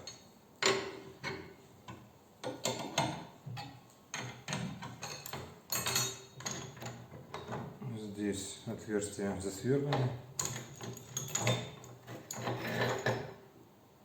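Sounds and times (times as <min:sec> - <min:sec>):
metal parts clicking and knocking: 0:02.4 - 0:07.6, 0:09.9 - 0:13.4.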